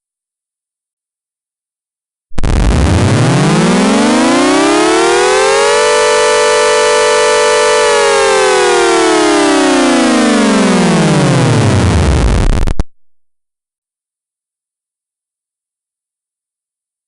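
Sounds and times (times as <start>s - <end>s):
warning siren wailing: 2.5s - 12.2s.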